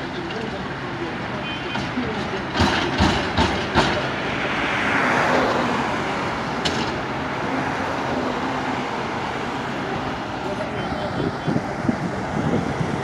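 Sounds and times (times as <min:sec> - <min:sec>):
steady traffic noise: 0:00.0 - 0:13.0
sharp knocks: 0:02.5 - 0:04.1
car passing: 0:03.9 - 0:13.0.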